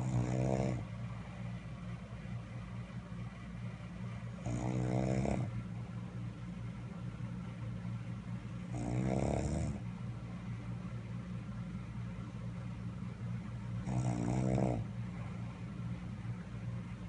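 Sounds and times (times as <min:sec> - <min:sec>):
man snoring: 0:00.0 - 0:00.8, 0:04.5 - 0:05.5, 0:08.7 - 0:09.8, 0:13.9 - 0:14.8
steady low hum: 0:00.0 - 0:17.0.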